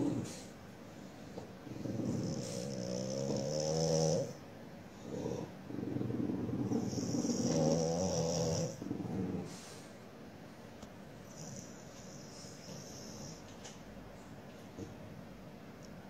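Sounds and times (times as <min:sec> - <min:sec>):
dog growling through nose: 0:00.0 - 0:00.6, 0:01.4 - 0:04.4, 0:05.0 - 0:09.8.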